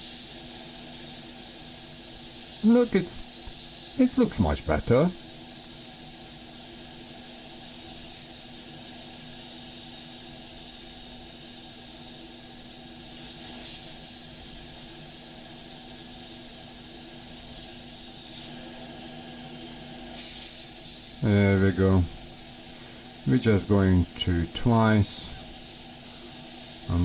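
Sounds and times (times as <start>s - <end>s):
air blower hissing: 0.0s - 6.2s, 20.1s - 27.0s.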